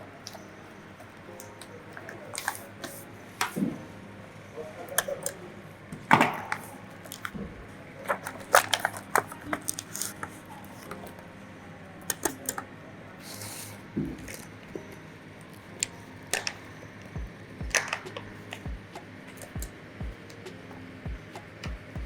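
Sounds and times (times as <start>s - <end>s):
steady low hum: 12.6s - 22.0s.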